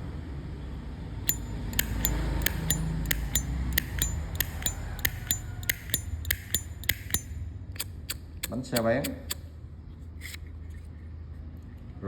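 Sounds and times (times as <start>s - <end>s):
lighter lid clicking open and shut: 1.3s - 9.4s.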